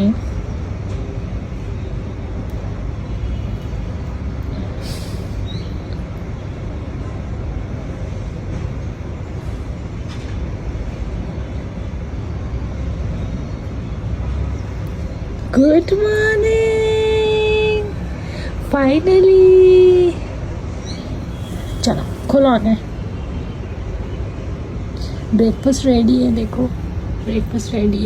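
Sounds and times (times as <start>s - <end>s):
low rumbling background noise: 0.0s - 28.0s
brief hiss: 4.8s - 5.5s.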